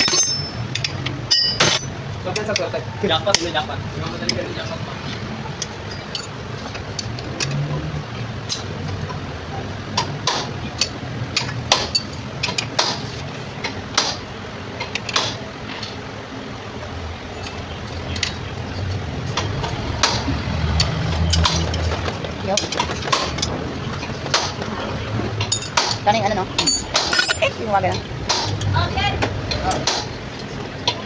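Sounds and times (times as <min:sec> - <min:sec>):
metallic clicks and clinks: 0:00.0 - 0:02.5, 0:05.9 - 0:06.4, 0:20.8 - 0:22.1, 0:25.5 - 0:26.0, 0:26.6 - 0:27.7.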